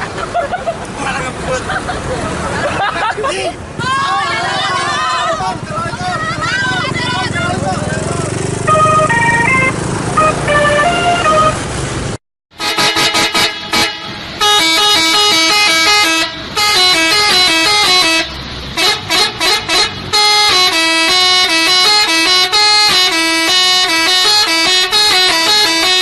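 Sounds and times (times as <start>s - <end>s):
musical bus air horn: 8.7s - 11.7s, 12.6s - 26.0s.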